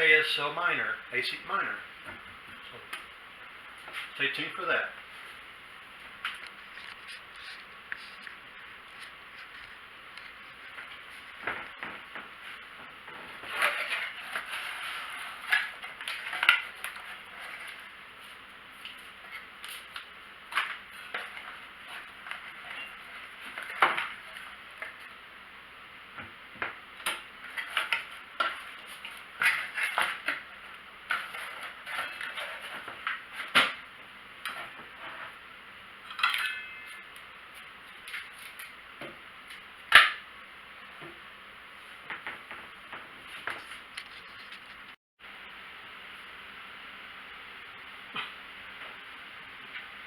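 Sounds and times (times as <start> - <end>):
metal ringing: 36.1 - 37.0.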